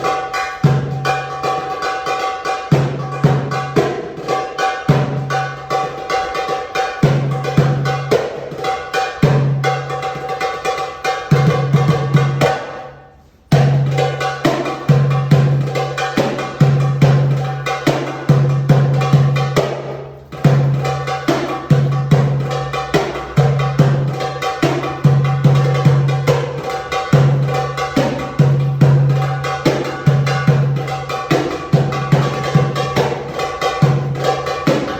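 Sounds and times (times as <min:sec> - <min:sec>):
tabla strokes: 0:00.0 - 0:34.9.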